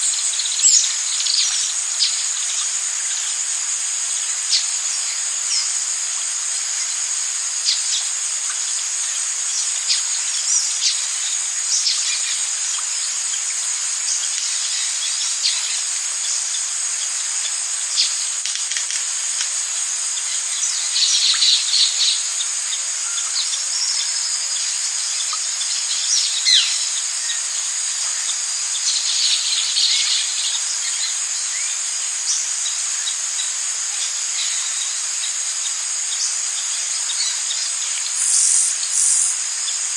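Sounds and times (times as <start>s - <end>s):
cicada-like drones: 0.0s - 39.9s
crickets chirping: 0.0s - 39.9s
chattering calls: 38.0s - 39.4s
bird chirps: 38.2s - 39.4s.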